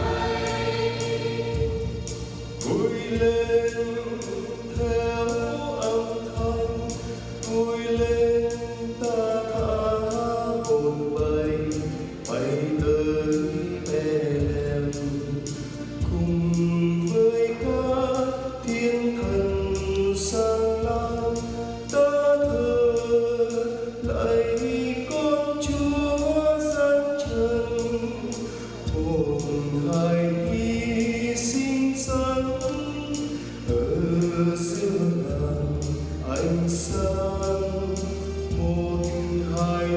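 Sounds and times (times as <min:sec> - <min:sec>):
choir singing a hymn: 0:00.0 - 0:03.7
instrumental accompaniment: 0:00.0 - 0:39.9.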